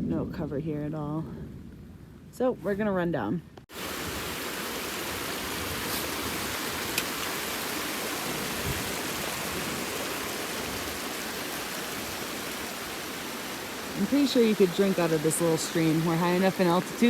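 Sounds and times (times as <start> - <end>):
stream rushing and splashing: 3.7 - 17.0.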